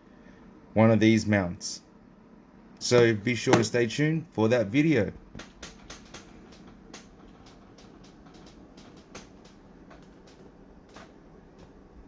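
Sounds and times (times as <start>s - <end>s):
low room hum: 0.0s - 12.0s
light clicks and taps: 5.3s - 11.8s.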